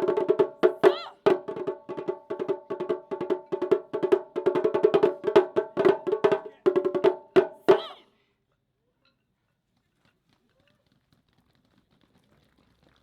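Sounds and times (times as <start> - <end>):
taiko drums struck fast: 0.0 - 7.9.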